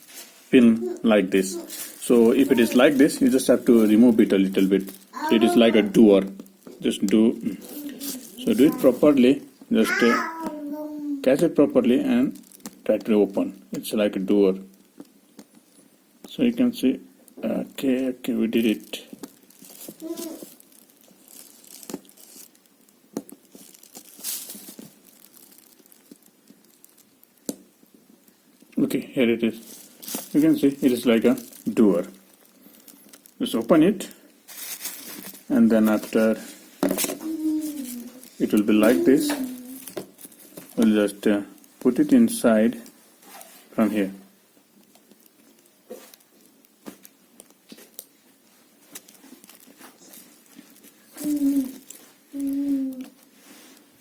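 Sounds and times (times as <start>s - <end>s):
light crinkling: 0.0s - 54.0s.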